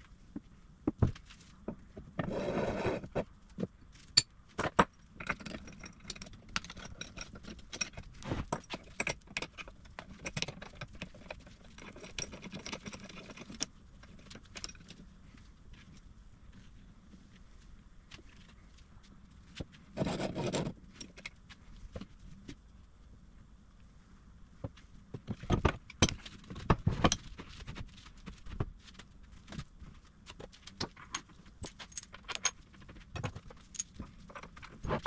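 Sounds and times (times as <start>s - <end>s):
metal tools clinking and knocking: 30.8s - 34.7s.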